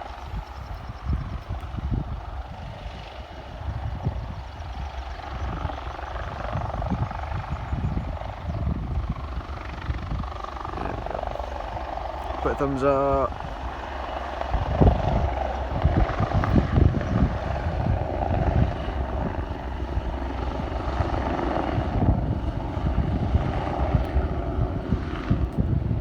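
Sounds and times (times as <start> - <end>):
wind buffeting microphone: 0.0 - 26.0.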